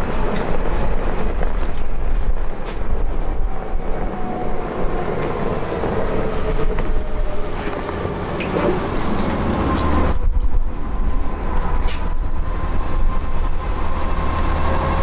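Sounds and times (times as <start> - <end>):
vehicle engine rumbling: 0.0 - 15.0.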